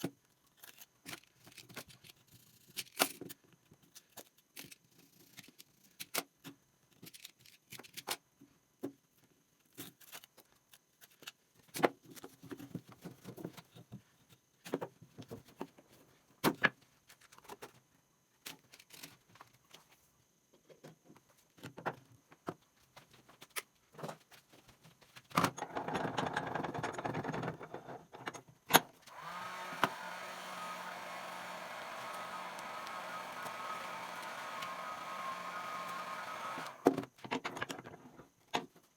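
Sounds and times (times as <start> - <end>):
small electric motor humming: 29.1 - 37.0.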